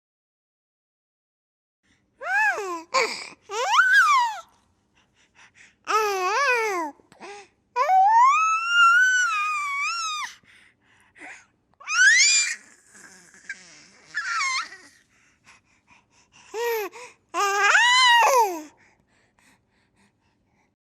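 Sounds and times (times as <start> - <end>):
baby squealing laughter: 13.4 - 14.8.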